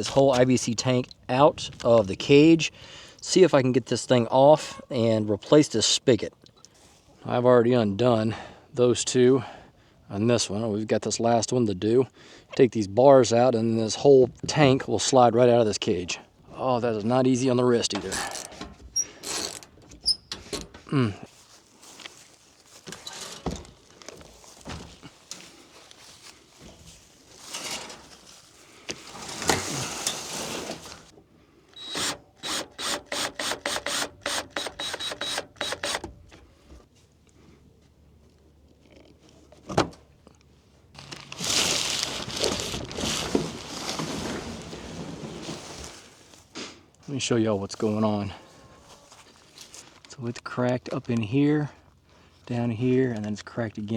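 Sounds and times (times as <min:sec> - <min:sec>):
long scraping noise: 0:29.1 - 0:31.1.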